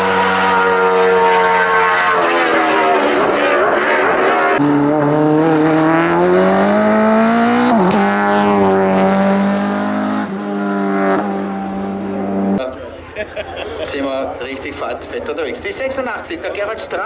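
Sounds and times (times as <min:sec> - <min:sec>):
race car engine at full throttle: 0:00.0 - 0:13.1.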